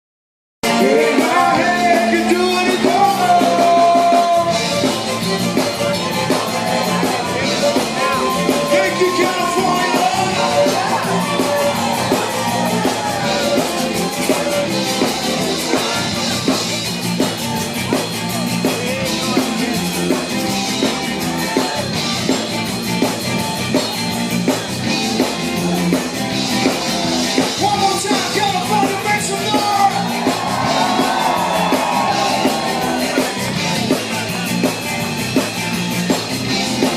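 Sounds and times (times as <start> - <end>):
person singing: 0.6 - 16.7
live band dance music: 0.6 - 36.9.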